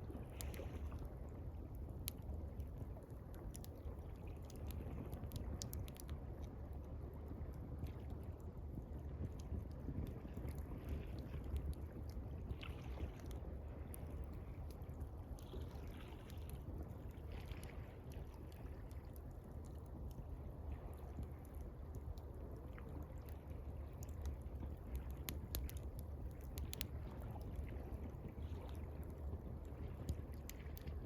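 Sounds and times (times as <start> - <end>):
campfire crackling and popping: 1.6 - 8.6, 21.2 - 31.0
water lapping: 10.5 - 14.8, 15.4 - 31.0.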